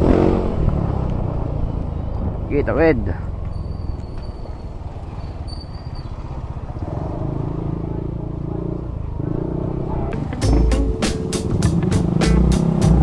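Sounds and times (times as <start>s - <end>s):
motor scooter engine: 10.2s - 13.0s.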